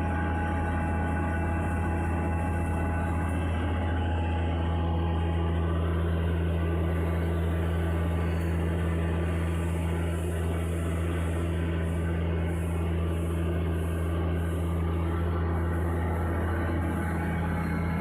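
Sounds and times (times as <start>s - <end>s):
grinding machine humming: 0.0s - 18.0s.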